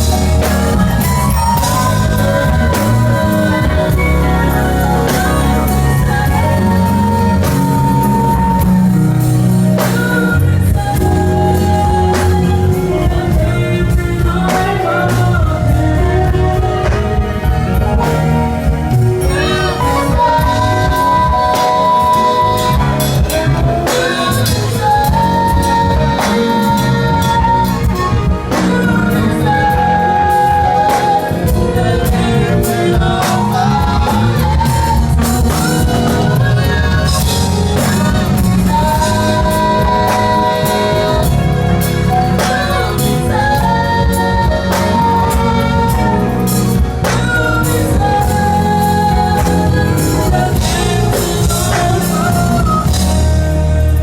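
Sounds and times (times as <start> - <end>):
gospel band playing: 0.0 - 54.0
heavy bass line: 0.0 - 54.0.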